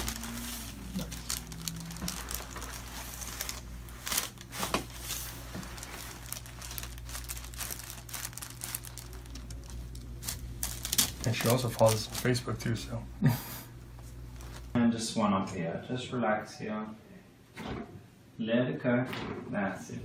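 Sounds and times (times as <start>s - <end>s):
material crinkling and rustling: 0.0s - 12.6s
steady low hum: 0.0s - 20.0s.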